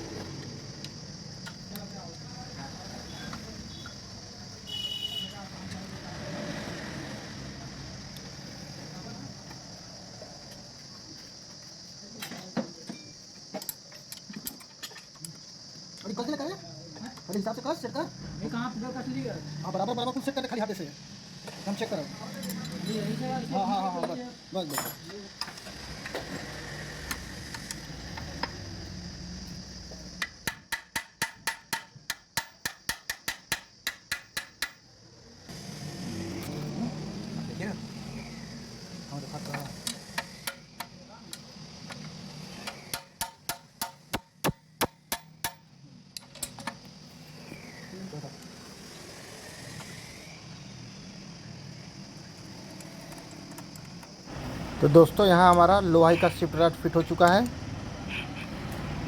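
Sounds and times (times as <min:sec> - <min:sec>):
high insect chirring: 0:00.0 - 0:59.0
metal parts clicking and knocking: 0:12.2 - 0:15.5
hammer striking steel: 0:30.2 - 0:34.8, 0:42.9 - 0:45.6.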